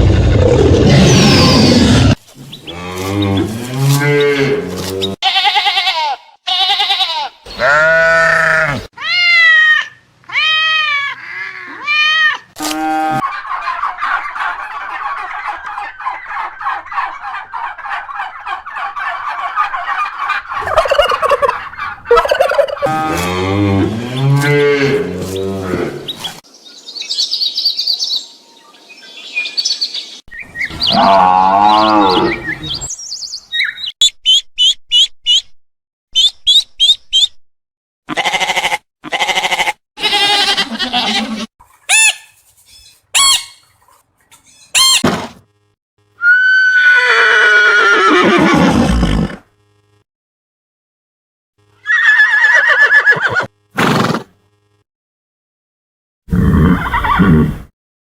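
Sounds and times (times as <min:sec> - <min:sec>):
cattle mooing: 0:02.6 - 0:05.4, 0:07.5 - 0:08.9, 0:12.6 - 0:13.2, 0:22.8 - 0:26.2, 0:30.9 - 0:32.8
poultry calls: 0:06.5 - 0:08.9, 0:12.6 - 0:26.4, 0:30.4 - 0:32.9, 0:38.1 - 0:45.0
high bird chirps: 0:27.0 - 0:35.5.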